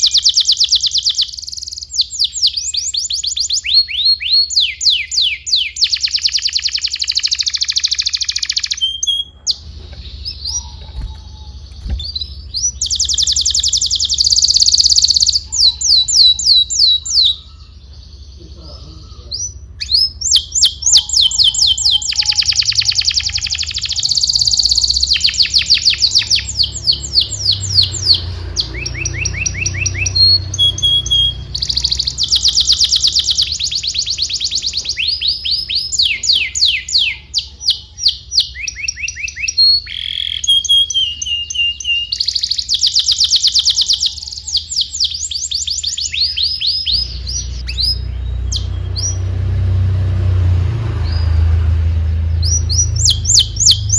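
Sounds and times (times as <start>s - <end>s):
canary singing trills: 0.0s - 53.9s
low steady rumble: 8.8s - 32.4s.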